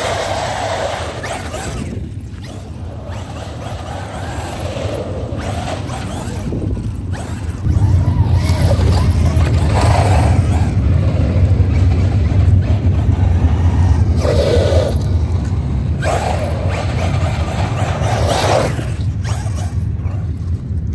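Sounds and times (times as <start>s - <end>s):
rc truck motor and tyres: 0.0s - 20.9s
steady low rumble: 0.0s - 20.9s.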